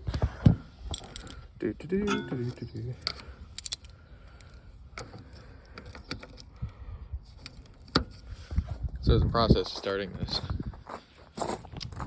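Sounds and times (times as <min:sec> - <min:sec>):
light metallic clicks and clanks: 0:02.0 - 0:06.5.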